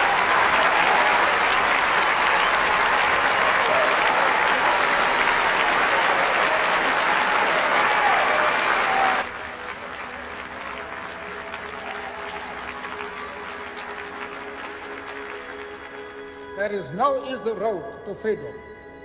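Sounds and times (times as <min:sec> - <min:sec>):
crowd hubbub: 0:00.0 - 0:10.8
crowd applauding: 0:00.0 - 0:17.2.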